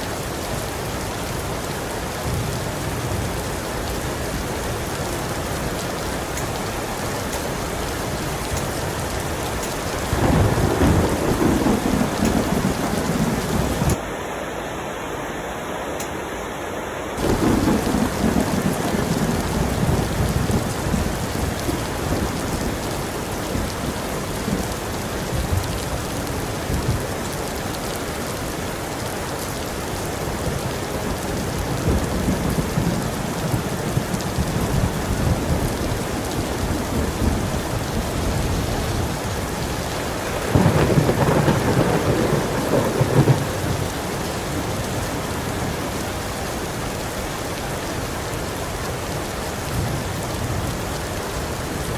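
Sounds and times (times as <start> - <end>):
thunder rumbling: 0.0 - 14.2, 17.2 - 28.0, 28.9 - 47.0
heavy rain falling: 0.0 - 51.9
thunder crack: 7.9 - 14.0, 17.2 - 25.8, 31.8 - 45.0.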